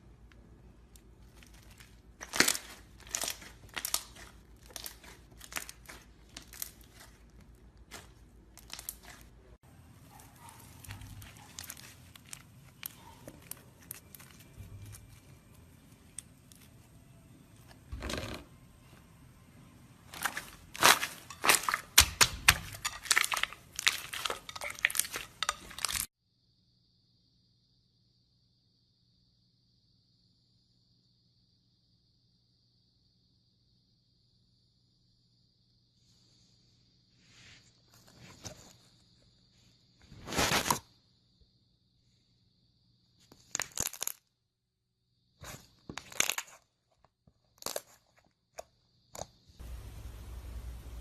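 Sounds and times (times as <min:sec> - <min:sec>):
hands squeezing slime: 0:01.2 - 0:09.3, 0:10.1 - 0:15.1, 0:20.2 - 0:26.1.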